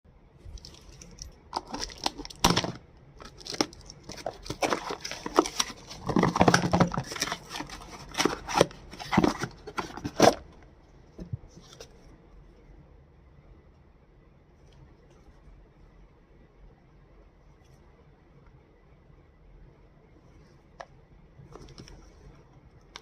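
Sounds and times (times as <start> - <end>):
packaging tearing and crinkling: 0.5 - 10.4.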